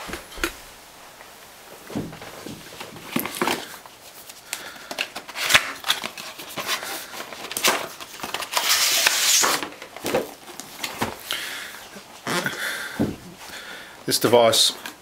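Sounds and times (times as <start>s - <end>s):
plastic wrap crackling and tearing: 2.2s - 11.3s.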